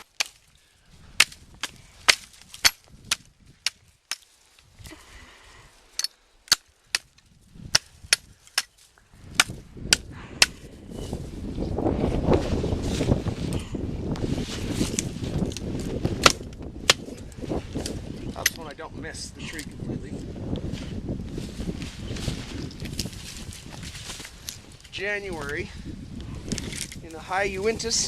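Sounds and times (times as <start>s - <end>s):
blade chopping branches: 0.0s - 0.5s, 1.2s - 4.4s, 6.5s - 10.6s, 14.7s - 17.2s
wind rumble on microphone: 0.8s - 4.0s, 6.9s - 28.0s.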